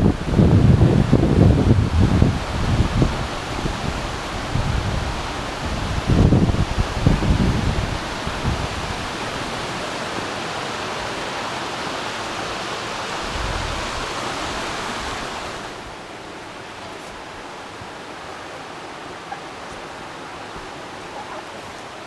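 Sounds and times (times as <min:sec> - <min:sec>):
wind on microphone: 0:00.0 - 0:16.0
mountain stream rushing: 0:00.0 - 0:22.0.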